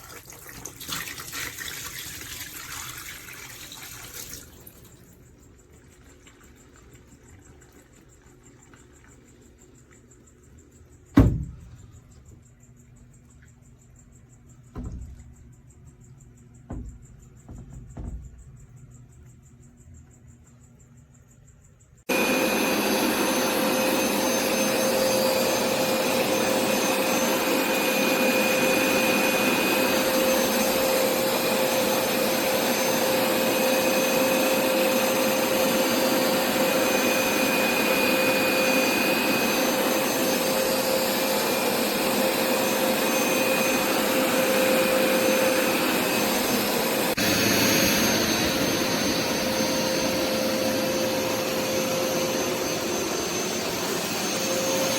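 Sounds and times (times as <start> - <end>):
carpet cleaner motor and suction: 22.1 - 54.9.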